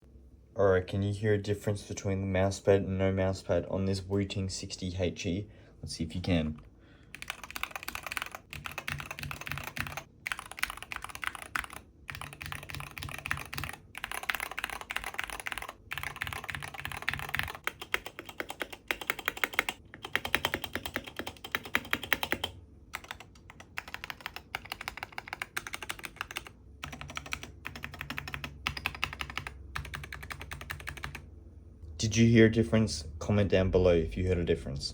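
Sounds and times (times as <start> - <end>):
fast keyboard typing: 7.1 - 31.2.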